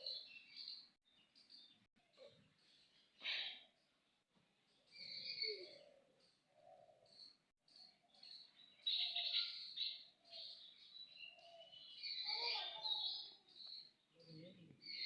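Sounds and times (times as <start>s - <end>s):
lower repeated bird calls: 4.7s - 15.0s.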